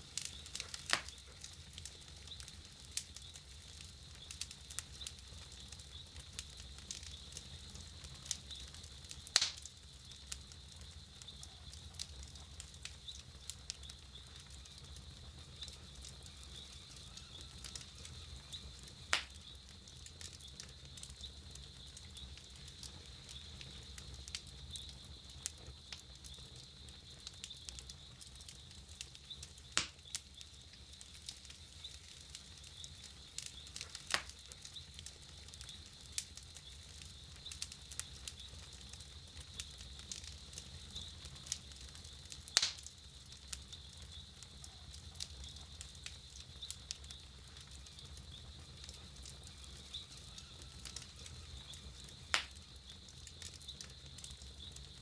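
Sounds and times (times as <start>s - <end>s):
campfire crackling: 0.0s - 55.0s
fire snapping: 0.0s - 55.0s.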